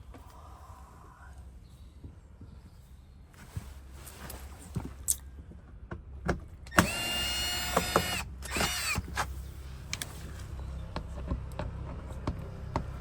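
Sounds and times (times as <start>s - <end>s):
cordless drill motor whine: 6.7s - 9.2s.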